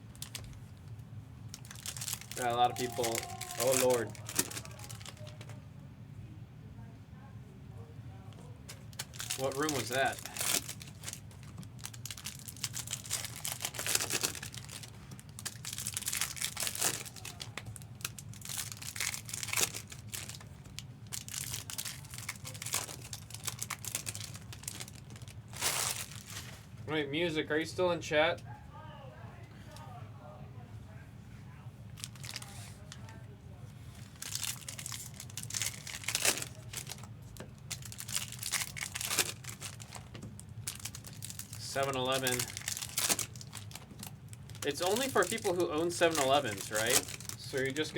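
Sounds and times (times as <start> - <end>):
card pack wrappers crinkling and tearing: 0.1 - 5.6, 8.8 - 26.6, 32.0 - 33.0, 34.0 - 47.9.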